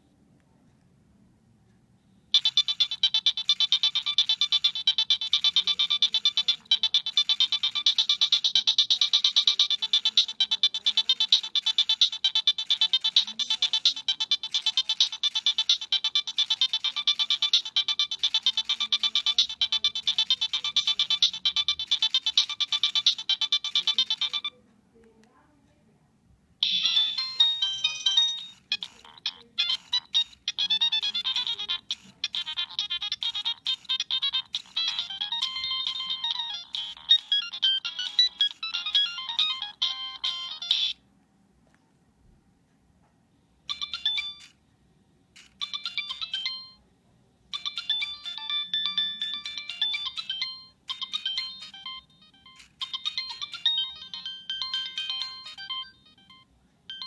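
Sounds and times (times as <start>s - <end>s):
high electronic ringtone notes: 2.3s - 24.6s, 26.6s - 41.0s, 43.7s - 44.6s, 45.6s - 46.8s, 47.6s - 57.0s
ringtone tune in short phrases: 2.3s - 24.6s, 26.6s - 41.0s, 43.7s - 44.6s, 45.6s - 46.8s, 47.5s - 57.0s.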